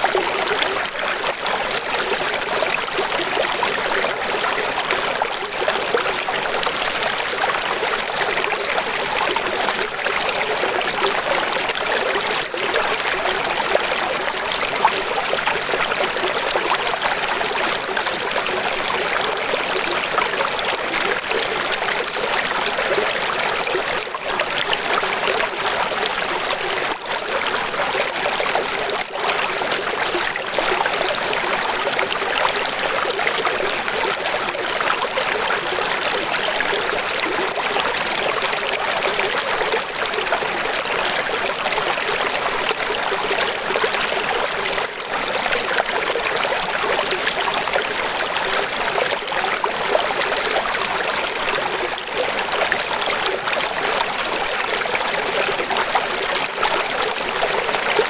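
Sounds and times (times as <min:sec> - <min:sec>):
rushing water: 0:00.0 - 0:58.0.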